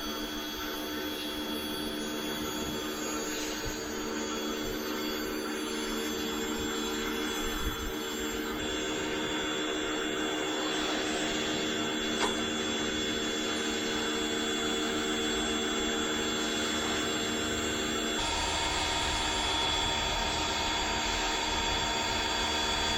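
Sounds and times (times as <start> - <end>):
pressure washer running: 1.0 - 22.9.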